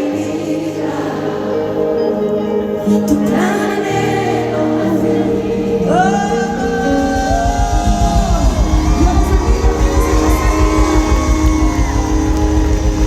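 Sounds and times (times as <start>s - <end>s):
voices singing sliding notes: 0.0s - 13.0s
bass beat: 7.2s - 13.0s.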